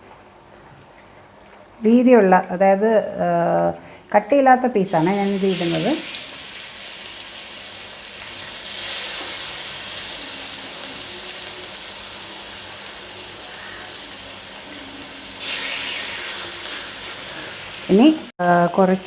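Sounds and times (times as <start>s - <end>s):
chicken sizzling in hot oil: 4.9s - 18.3s.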